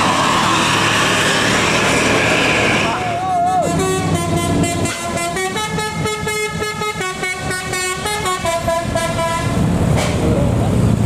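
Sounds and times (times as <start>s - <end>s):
multi-tone bus horn tune: 3.4s - 9.6s.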